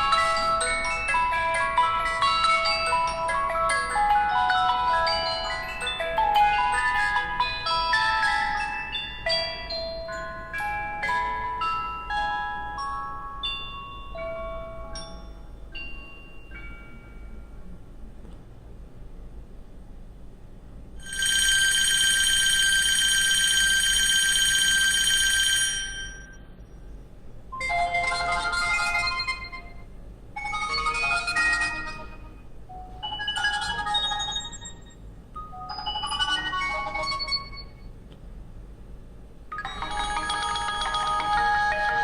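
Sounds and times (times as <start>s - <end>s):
short chiming ringtone melodies: 0.0s - 17.5s, 30.4s - 37.9s, 39.5s - 42.0s
electronic phone ring: 21.0s - 26.3s, 30.4s - 37.8s, 39.5s - 42.0s.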